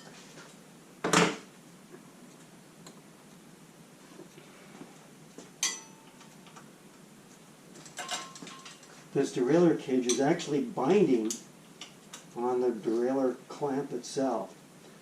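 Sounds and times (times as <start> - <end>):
sharp metallic clink: 5.6 - 6.2.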